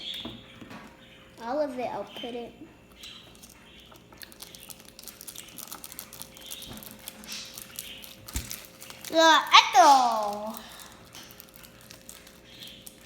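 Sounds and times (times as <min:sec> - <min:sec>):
packet crinkling: 0:03.4 - 0:13.0
powder pattering into plastic cup: 0:04.1 - 0:13.0.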